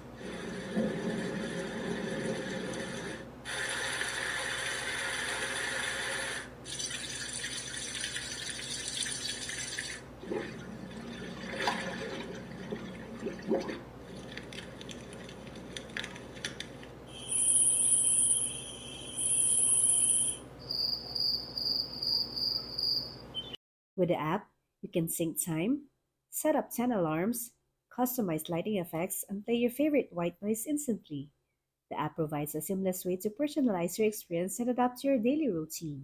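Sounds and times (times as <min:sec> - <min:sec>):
water sound with drips: 0:06.6 - 0:16.9
long high steady tones: 0:17.1 - 0:20.5.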